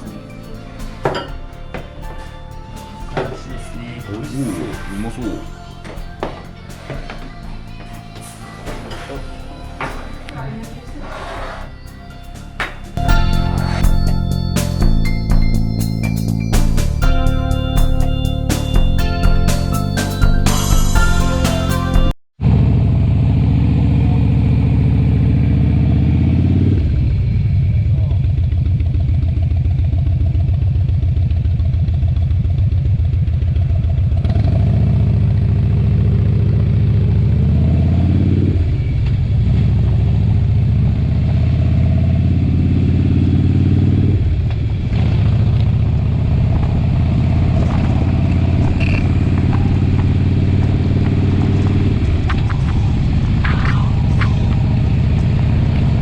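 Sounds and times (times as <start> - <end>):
motorcycle engine shifting gears: 22.4 - 56.0.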